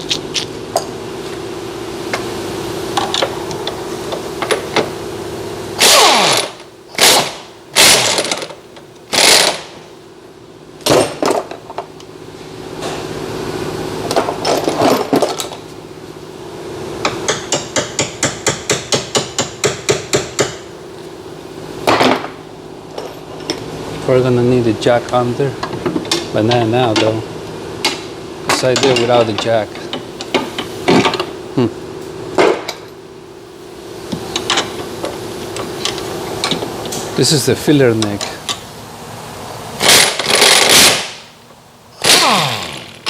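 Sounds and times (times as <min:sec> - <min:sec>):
impact wrench bursts: 0:05.8 - 0:09.8, 0:39.8 - 0:41.4, 0:42.0 - 0:43.0.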